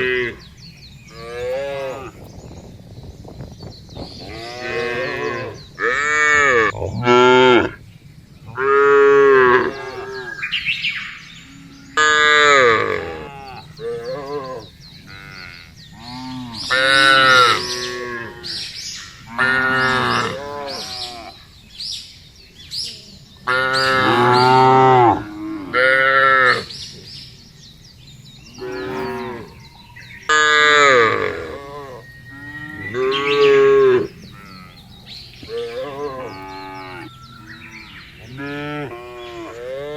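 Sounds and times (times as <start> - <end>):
cows mooing: 1.1 - 2.2, 4.2 - 7.8, 8.5 - 10.6, 11.3 - 18.7, 19.3 - 21.4, 23.5 - 26.7, 28.6 - 29.7, 30.3 - 39.9.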